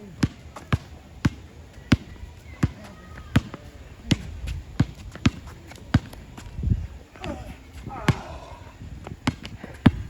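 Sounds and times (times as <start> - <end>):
basketball bouncing on court: 0.1 - 6.2.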